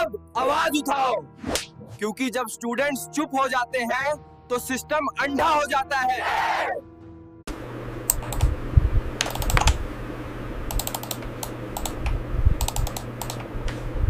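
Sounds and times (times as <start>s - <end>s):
low hum: 7.5s - 14.0s
keyboard typing: 8.1s - 8.5s, 9.2s - 9.8s, 10.7s - 13.5s.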